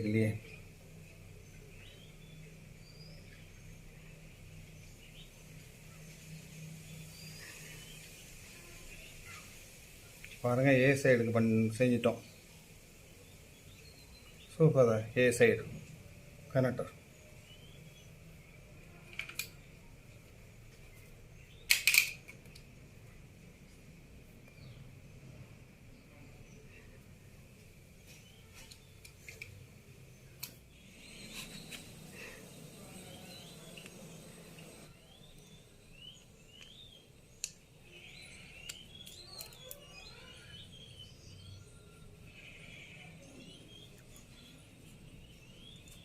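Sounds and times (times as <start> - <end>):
birds chirping: 0.0 - 46.0
sharp clicks: 19.1 - 19.6, 21.6 - 22.7
faint high whine: 29.4 - 46.0
hand tool clicking on cable: 38.6 - 39.8.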